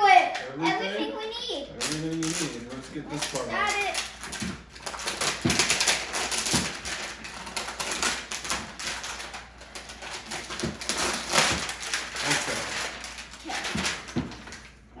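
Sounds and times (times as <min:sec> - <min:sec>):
toy packaging crinkling and rustling: 0:01.7 - 0:14.9.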